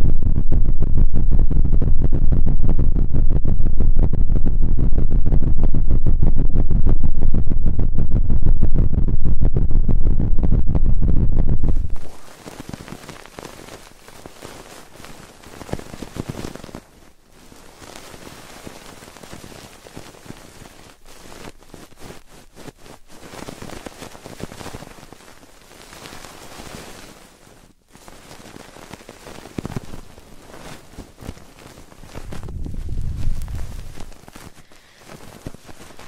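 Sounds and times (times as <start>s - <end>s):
fingers rubbing on microphone: 10.8s - 36.0s.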